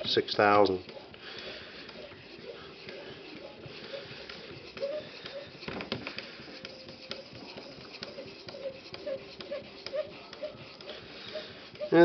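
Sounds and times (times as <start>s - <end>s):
water stone scraping knife blade: 0.0s - 12.0s.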